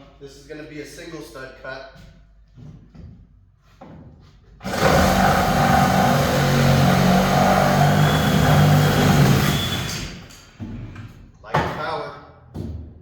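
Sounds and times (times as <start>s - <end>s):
reciprocating saw cutting wood: 4.6s - 10.3s.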